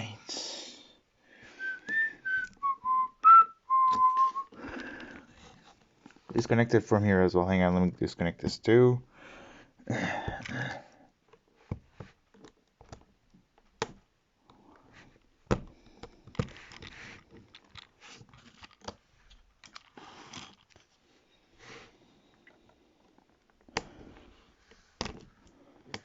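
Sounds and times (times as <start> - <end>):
plastic parts clicking and scraping: 11.3 - 14.0, 14.8 - 21.0, 22.3 - 26.0.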